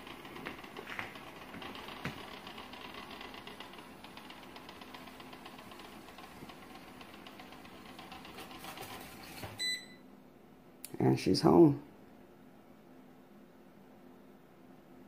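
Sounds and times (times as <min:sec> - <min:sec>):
short electronic beep: 0:09.6 - 0:10.0.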